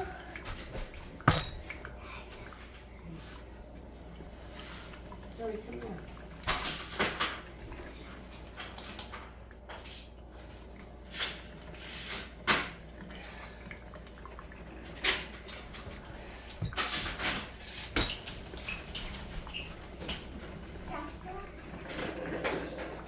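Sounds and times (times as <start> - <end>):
hard objects knocking and clattering: 0.8 - 1.9.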